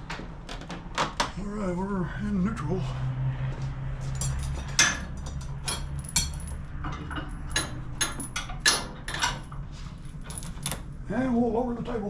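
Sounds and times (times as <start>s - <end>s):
sharp clicks and knocks: 4.1s - 9.6s.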